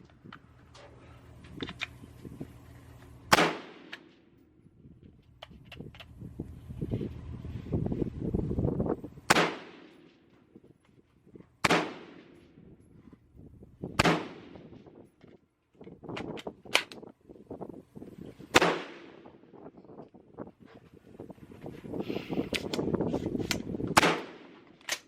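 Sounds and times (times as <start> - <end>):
gunshots: 3.3 - 4.2, 9.3 - 10.1, 11.6 - 12.4, 14.0 - 14.7, 18.5 - 19.3, 24.0 - 24.7.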